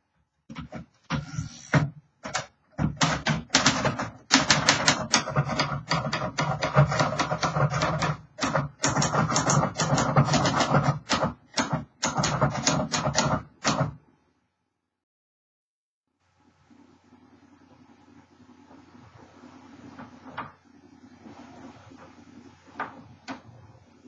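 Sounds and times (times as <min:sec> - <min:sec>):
typewriter keystrokes: 0:01.8 - 0:14.0.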